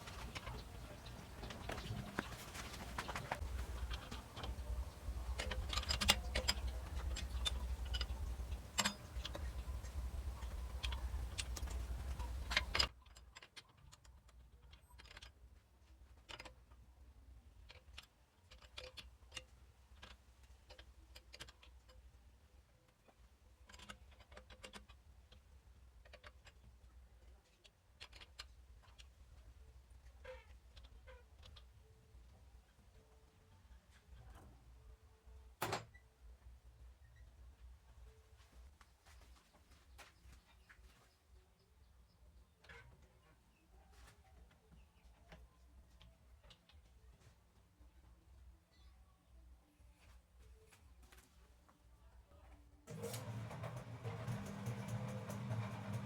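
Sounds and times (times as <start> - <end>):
low machine hum: 52.9 - 56.0.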